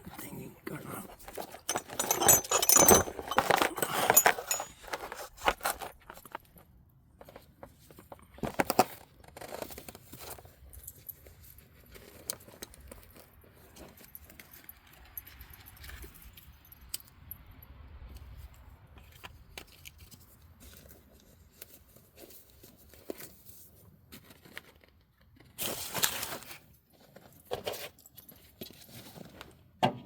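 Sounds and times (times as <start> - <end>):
metallic clinks of tools: 1.6 - 5.6.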